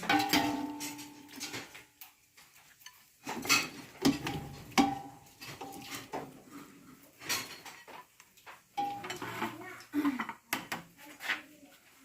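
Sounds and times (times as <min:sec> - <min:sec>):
kitchenware knocks and clinks: 0:00.0 - 0:01.8, 0:02.9 - 0:06.4, 0:07.2 - 0:10.9.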